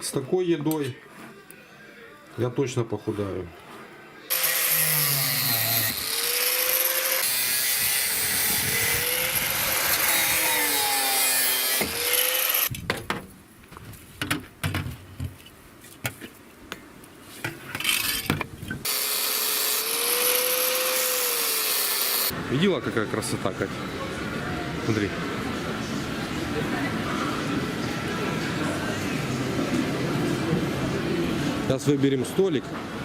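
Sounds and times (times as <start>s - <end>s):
power tool cutting steel: 4.3s - 12.7s, 18.8s - 22.3s
knocks and scraping: 17.3s - 18.8s.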